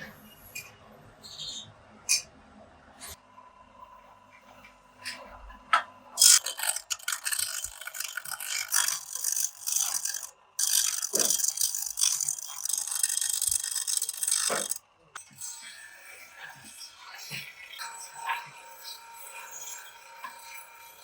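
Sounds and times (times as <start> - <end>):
metallic rattling and scraping: 6.2 - 14.8
sharp clicks: 6.2 - 14.8.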